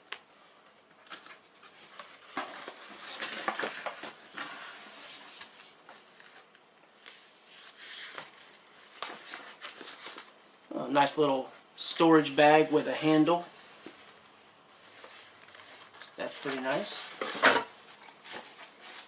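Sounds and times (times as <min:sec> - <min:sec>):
plastic packaging rustling: 0:00.2 - 0:10.6, 0:12.6 - 0:19.0.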